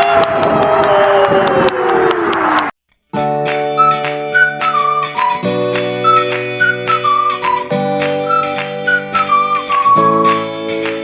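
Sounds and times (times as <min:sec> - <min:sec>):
high gliding melody: 0:03.2 - 0:11.0
plucked guitar chords: 0:03.2 - 0:11.0.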